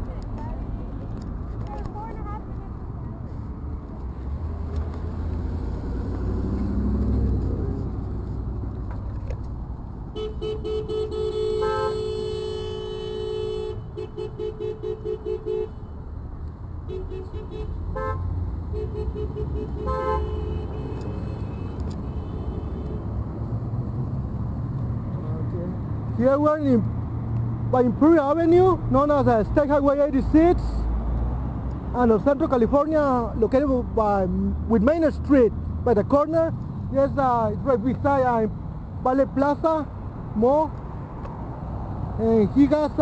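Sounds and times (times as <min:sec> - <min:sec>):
low traffic rumble: 0:00.0 - 0:43.0
car horns honking: 0:10.1 - 0:16.0, 0:16.8 - 0:23.2.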